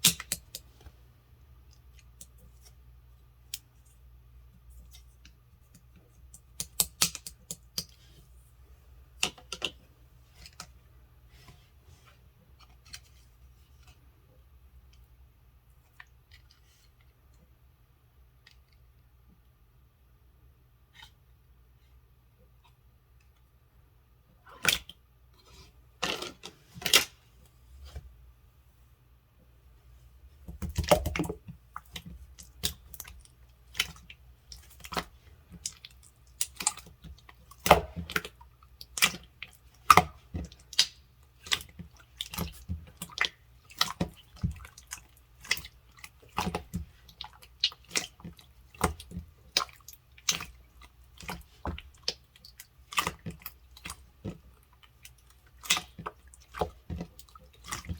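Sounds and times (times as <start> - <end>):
sticky slime clicks and pops: 6.6 - 7.9.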